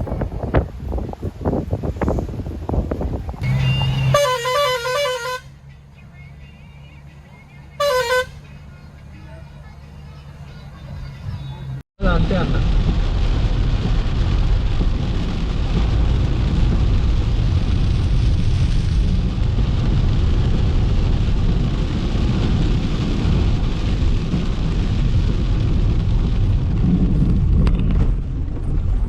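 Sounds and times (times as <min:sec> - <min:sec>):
wind rumble on microphone: 0:00.0 - 0:04.3, 0:10.9 - 0:29.0.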